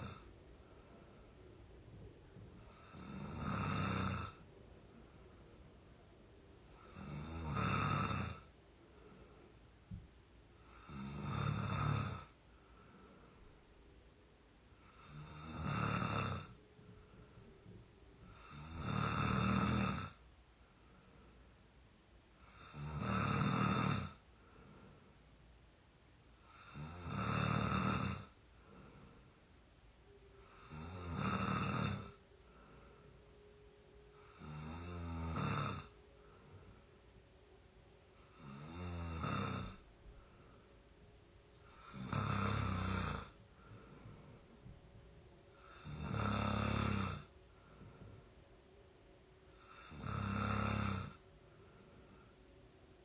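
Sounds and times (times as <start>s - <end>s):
person snoring: 0.0s - 0.3s, 2.6s - 4.4s, 6.7s - 9.3s, 10.6s - 13.4s, 14.8s - 16.6s, 18.2s - 20.2s, 22.4s - 24.9s, 26.4s - 29.3s, 30.4s - 33.1s, 34.1s - 36.8s, 38.2s - 40.6s, 41.6s - 44.4s, 45.5s - 48.2s, 49.5s - 52.3s
quiet breathing: 0.0s - 53.0s.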